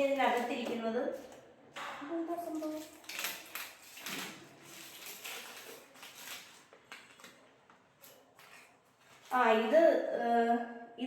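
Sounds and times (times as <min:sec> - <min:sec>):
package rustling: 0:02.3 - 0:09.5.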